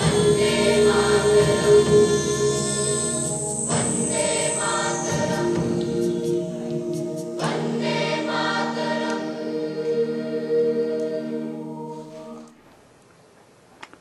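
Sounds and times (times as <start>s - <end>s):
choir singing sustained chords: 0.0s - 12.6s.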